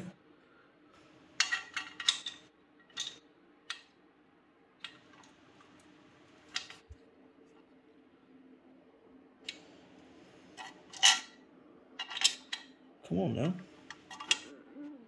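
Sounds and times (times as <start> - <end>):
metallic clicks of tools and bolts: 1.4 - 3.9, 13.9 - 14.5.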